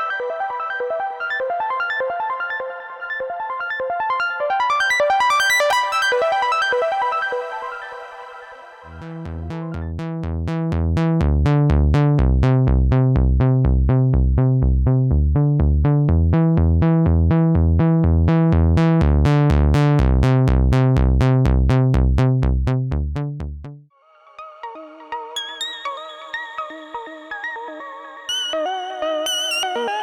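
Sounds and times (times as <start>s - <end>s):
synthesizer bass sequence: 4.6s - 23.8s.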